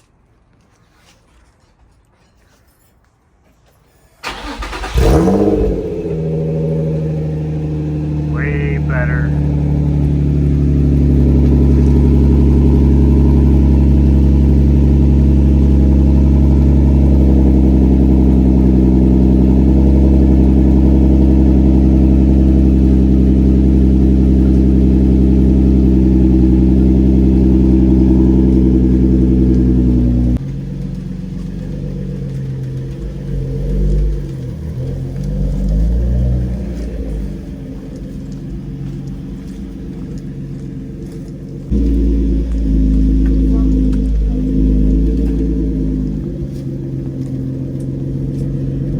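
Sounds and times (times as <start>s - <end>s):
car engine idling loudly: 37.6s - 48.9s.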